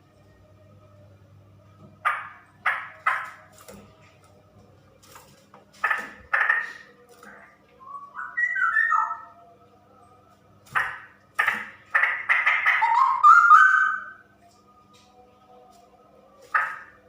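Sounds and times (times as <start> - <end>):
bird calling in whistled phrases: 7.8 - 9.3, 12.3 - 14.2.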